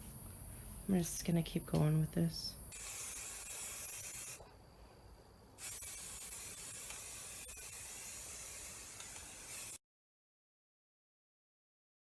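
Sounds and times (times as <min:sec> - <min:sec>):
aerosol spray paint hissing: 0:02.6 - 0:04.5, 0:05.6 - 0:09.8.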